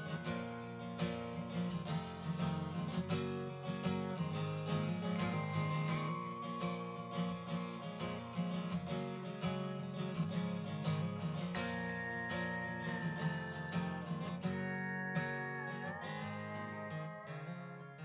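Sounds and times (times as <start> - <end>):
sliding lead guitar: 0.0 - 18.0
strummed acoustic guitar: 0.0 - 18.0.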